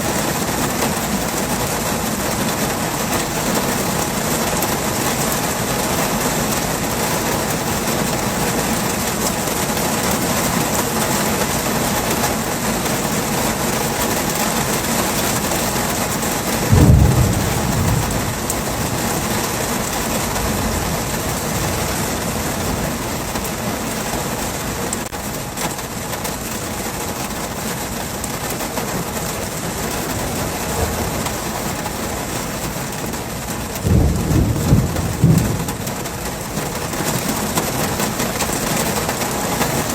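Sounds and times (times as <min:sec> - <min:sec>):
heavy rain falling: 0:00.0 - 0:39.9
low thunder rumble: 0:16.5 - 0:24.2, 0:30.3 - 0:32.0, 0:33.8 - 0:38.0.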